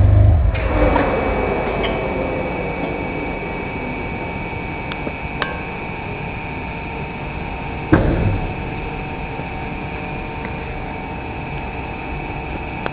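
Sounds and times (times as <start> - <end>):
car engine idling: 0.0 - 12.3
loud thump: 7.9 - 8.7.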